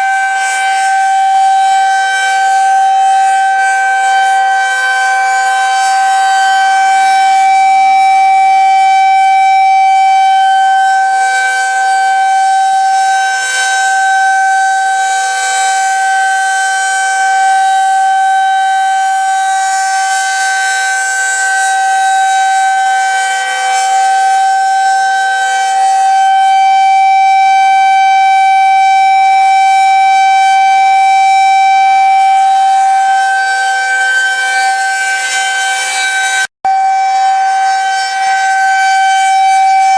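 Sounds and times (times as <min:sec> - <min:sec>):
tornado warning siren steady tone: 0:00.0 - 0:39.9.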